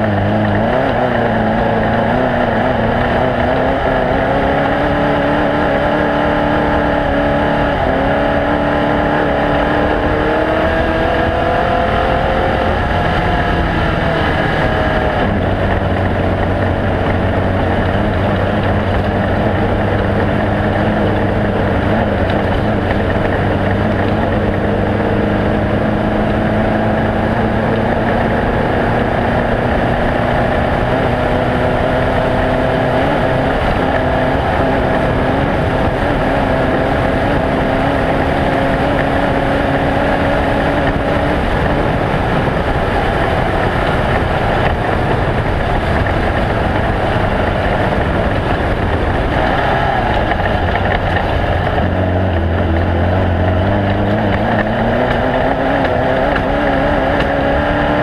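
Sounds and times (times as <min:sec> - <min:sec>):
race vehicle engines running: 0:00.0 - 0:58.0.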